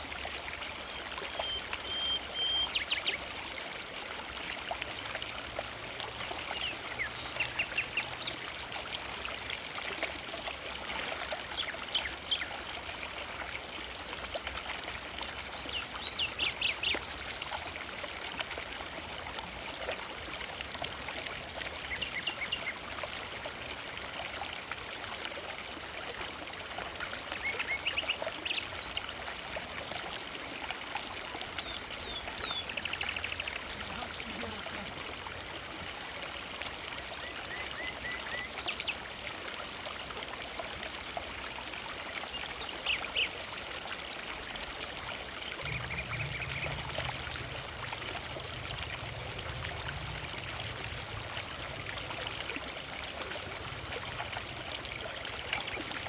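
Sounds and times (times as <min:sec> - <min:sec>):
river water rushing: 0:42.6 - 0:56.0
bird chirps and trills: 0:45.6 - 0:47.7.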